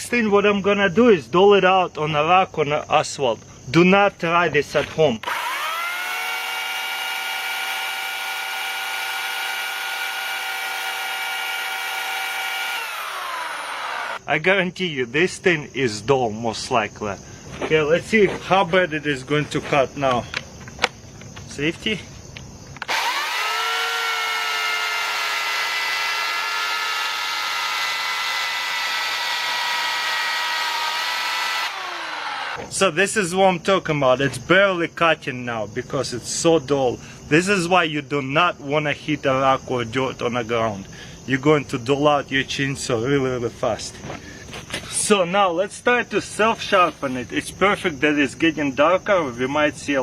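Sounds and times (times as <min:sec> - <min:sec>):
electric chainsaw whining: 0:05.2 - 0:14.2, 0:22.8 - 0:32.6.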